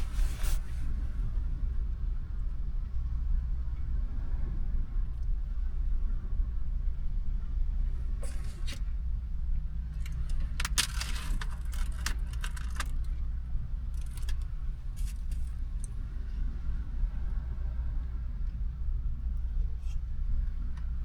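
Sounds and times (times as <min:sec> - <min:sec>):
steady low rumble: 0:00.0 - 0:21.0
small objects clinking and rattling: 0:10.0 - 0:13.0.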